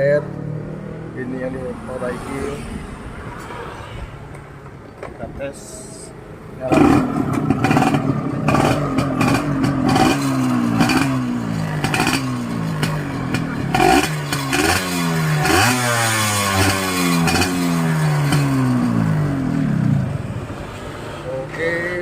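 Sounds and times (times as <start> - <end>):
two-stroke motorcycle engine revving: 6.6 - 20.2.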